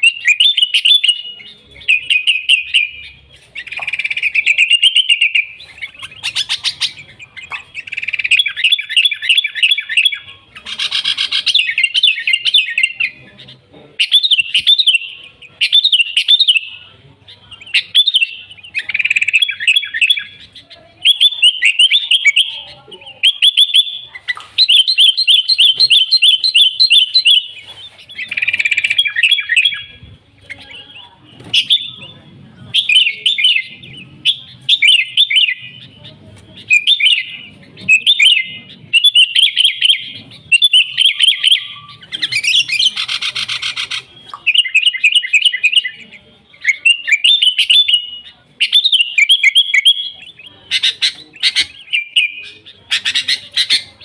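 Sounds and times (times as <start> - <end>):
bulbul singing chirped phrases: 14.0 - 54.0.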